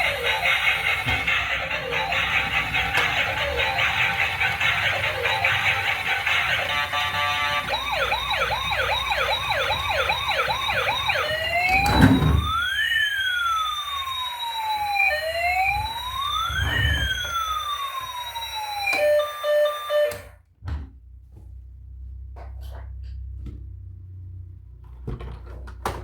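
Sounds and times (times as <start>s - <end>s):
toy siren warbling and wailing: 0.0s - 20.3s.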